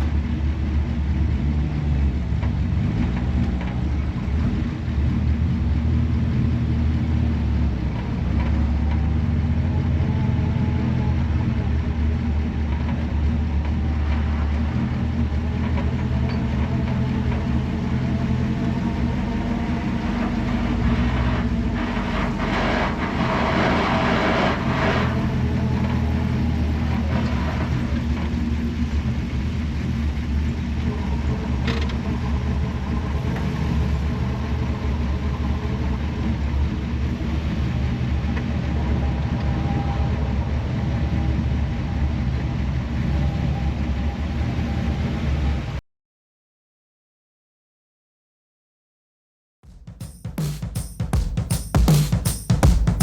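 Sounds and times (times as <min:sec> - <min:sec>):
car engine running: 0:00.0 - 0:39.0
rush of noise: 0:19.1 - 0:29.2.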